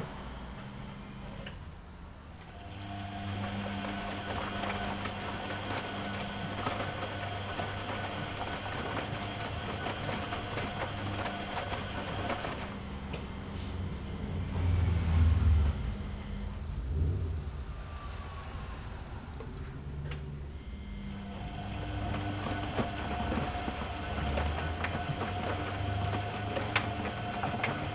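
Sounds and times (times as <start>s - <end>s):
washing machine motor humming: 0.0s - 16.8s, 19.3s - 27.9s
low rumble: 13.5s - 20.9s.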